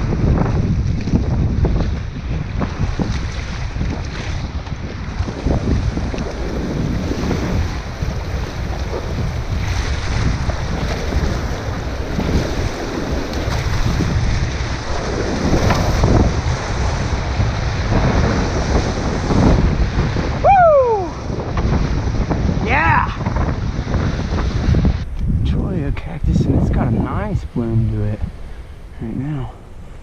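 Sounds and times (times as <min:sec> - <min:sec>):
wind buffeting microphone: 0:00.0 - 0:30.0
river water rushing and splashing: 0:03.0 - 0:25.2.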